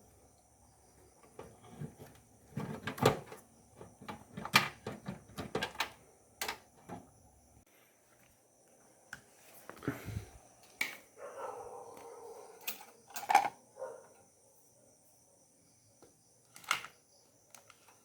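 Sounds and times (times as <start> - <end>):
computer parts knocking and clattering: 1.2 - 7.1.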